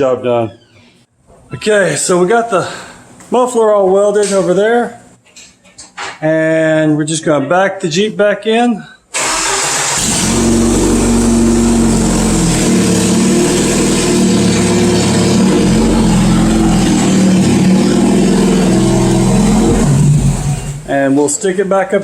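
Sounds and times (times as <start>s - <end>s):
loud engine with open exhaust: 9.6s - 20.8s.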